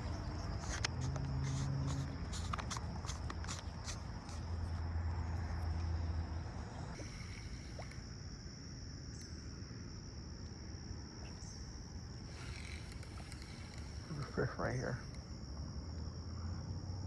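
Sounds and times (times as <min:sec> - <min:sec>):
high-pitched insect buzz: 0:00.0 - 0:09.7, 0:11.2 - 0:17.0.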